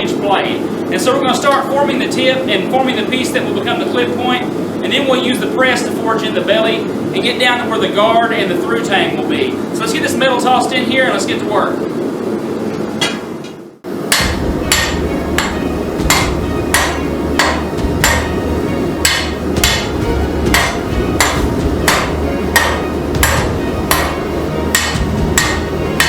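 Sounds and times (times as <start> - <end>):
steady low rumble: 14.0 - 26.0
hammer blows on steel: 14.1 - 26.0.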